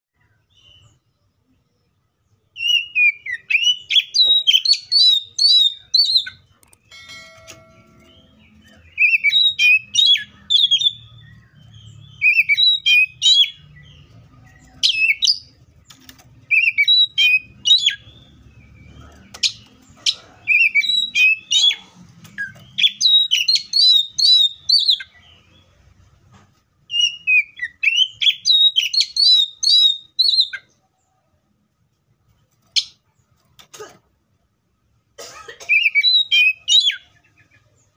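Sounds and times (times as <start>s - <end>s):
bird singing whistled phrases: 2.6s - 6.4s, 8.9s - 13.7s, 16.5s - 18.3s, 20.5s - 21.8s, 22.4s - 25.1s, 26.9s - 30.7s, 35.7s - 37.1s.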